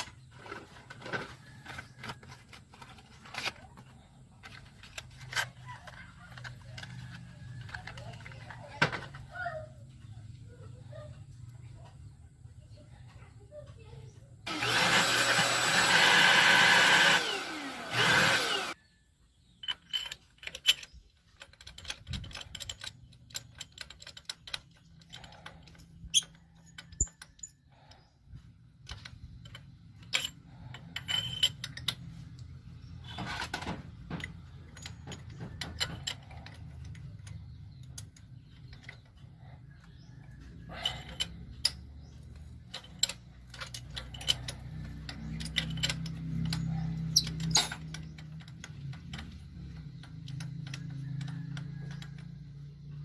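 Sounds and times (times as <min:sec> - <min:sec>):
tools clicking and tapping: 0:00.0 - 0:09.3, 0:19.5 - 0:27.6, 0:28.8 - 0:53.0
power tool motor running: 0:14.5 - 0:18.8.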